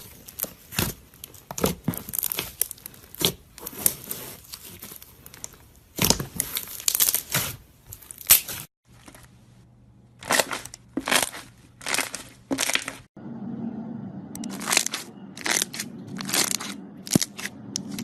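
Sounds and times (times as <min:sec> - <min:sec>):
faint low hum: 0:13.2 - 0:18.0.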